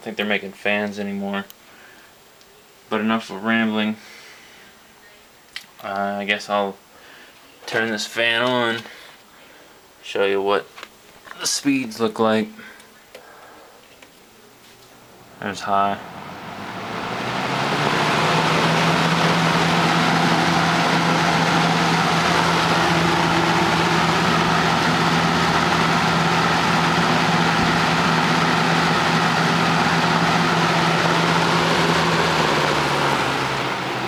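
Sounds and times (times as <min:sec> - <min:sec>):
fan air rushing: 0:14.9 - 0:34.0
low motor hum: 0:15.2 - 0:34.0.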